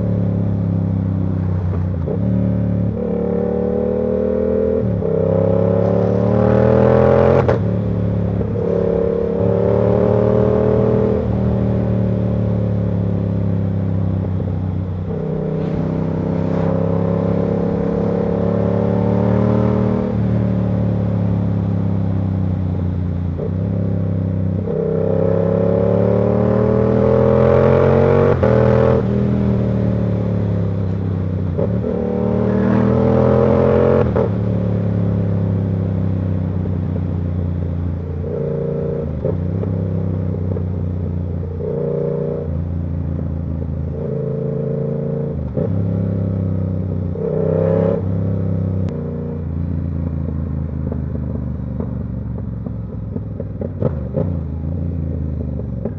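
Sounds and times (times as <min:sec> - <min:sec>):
motorcycle engine revving through gears: 0:00.0 - 0:55.9.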